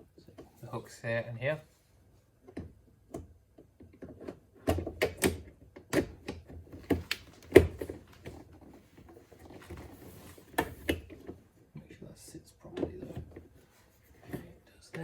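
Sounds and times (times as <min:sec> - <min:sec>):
plastic trim clicks and knocks: 0:02.4 - 0:08.4.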